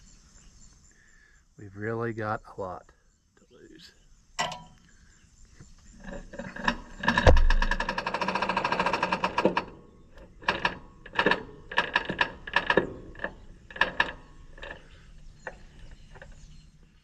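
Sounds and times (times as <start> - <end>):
roller chain rattling: 6.0 - 16.5.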